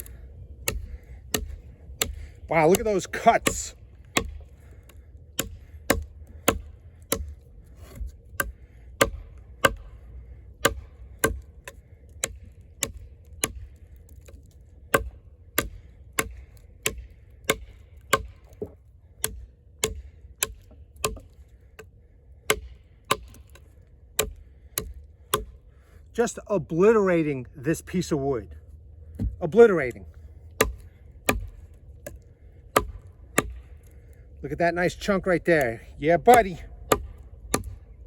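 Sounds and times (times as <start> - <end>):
knife chopping into log: 30.6 - 32.2.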